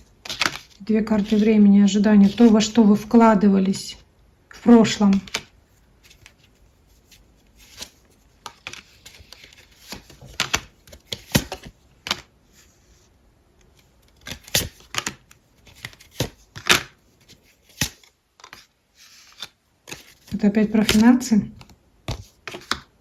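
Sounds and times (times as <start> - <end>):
cards snapping and sliding: 14.2 - 17.0, 17.6 - 18.6.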